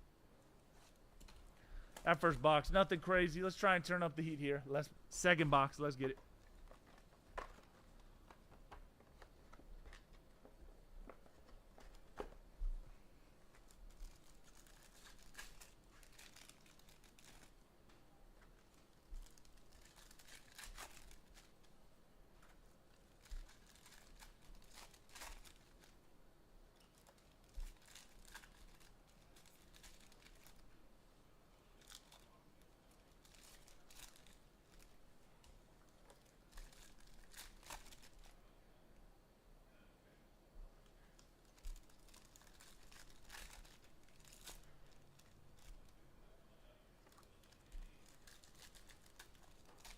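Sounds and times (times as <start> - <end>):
wrapping tearing and crinkling: 13.5 - 17.7, 18.4 - 21.8, 22.4 - 26.1, 26.7 - 30.8, 31.8 - 38.4, 41.1 - 46.0, 47.1 - 49.9
sharp paper rips: 19.3 - 21.5.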